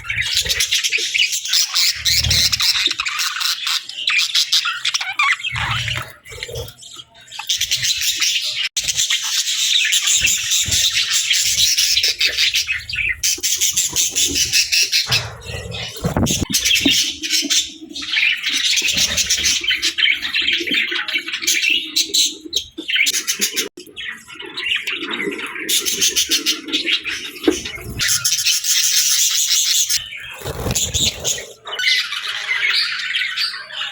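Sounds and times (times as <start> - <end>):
budgerigars chattering: 0.0 - 33.9.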